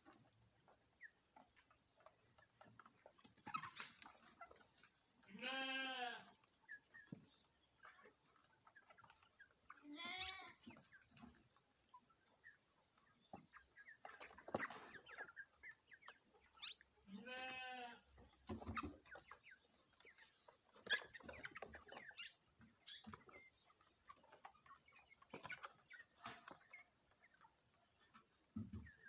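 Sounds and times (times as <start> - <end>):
chickens clucking: 0.0 - 29.0.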